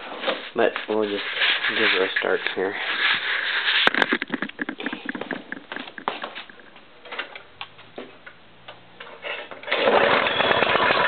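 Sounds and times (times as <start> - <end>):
engine being pull-started: 9.6 - 11.0.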